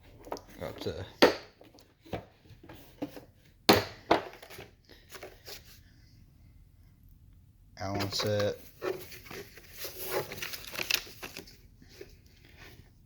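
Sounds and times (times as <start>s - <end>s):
plastic packaging crinkling: 8.0s - 11.6s.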